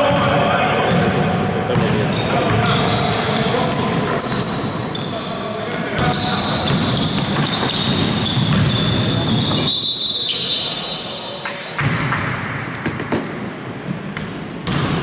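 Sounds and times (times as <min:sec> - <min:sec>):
players' voices: 0:00.0 - 0:11.9
basketball bouncing on court: 0:00.1 - 0:02.8, 0:06.0 - 0:09.7, 0:14.2 - 0:15.0
sneaker squeaks: 0:00.2 - 0:01.1, 0:01.7 - 0:11.7.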